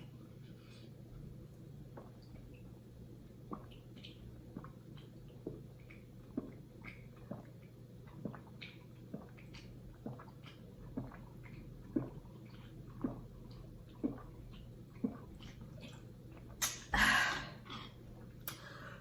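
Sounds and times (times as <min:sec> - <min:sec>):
water dripping: 0:01.5 - 0:16.9.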